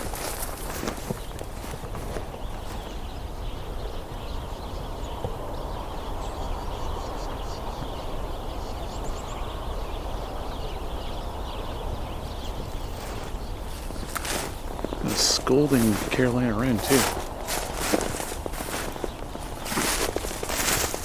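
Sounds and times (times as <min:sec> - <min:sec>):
footsteps through brush: 0:00.0 - 0:03.5, 0:12.3 - 0:21.0
sparrows chirping: 0:00.0 - 0:21.0.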